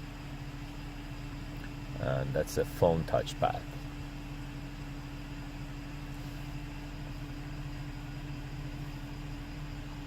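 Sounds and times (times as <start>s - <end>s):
car cabin hum: 0.0s - 10.0s.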